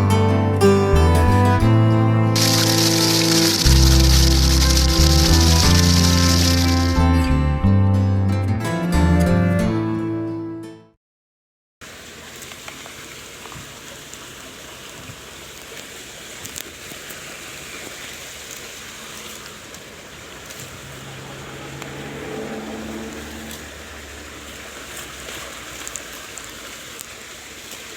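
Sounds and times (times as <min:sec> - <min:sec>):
background music: 0:00.0 - 0:10.9
ticks of raindrops: 0:02.4 - 0:06.9, 0:11.8 - 0:27.9
steady rain: 0:02.4 - 0:07.0, 0:11.8 - 0:27.9.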